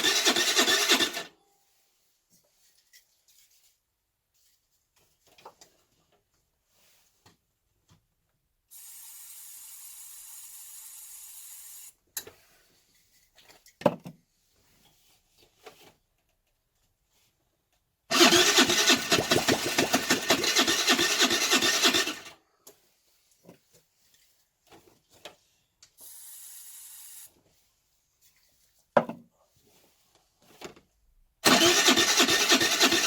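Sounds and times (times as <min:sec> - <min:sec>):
scooter engine cranking: 0:00.0 - 0:01.3, 0:18.1 - 0:22.3, 0:31.4 - 0:33.0.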